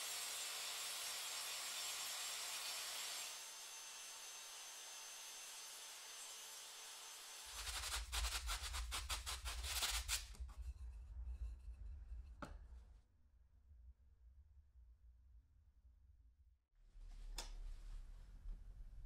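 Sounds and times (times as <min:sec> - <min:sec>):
hand tool rasping wood: 0:07.5 - 0:10.4.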